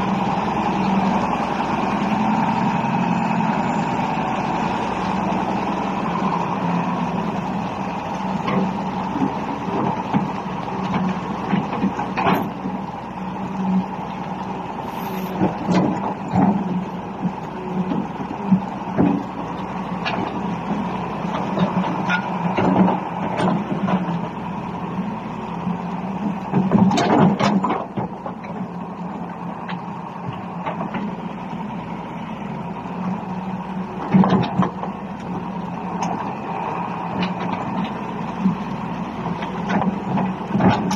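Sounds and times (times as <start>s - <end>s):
excavator diesel engine running: 0.0s - 40.9s
machine knocks and clanks: 26.5s - 28.4s.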